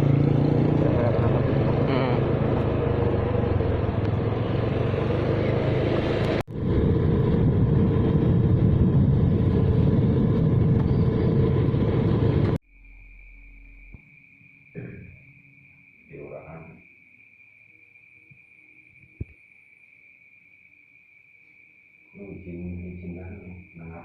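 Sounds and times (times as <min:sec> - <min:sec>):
road vehicle rumble: 0:00.0 - 0:14.0
high-pitched insect drone: 0:12.6 - 0:24.0.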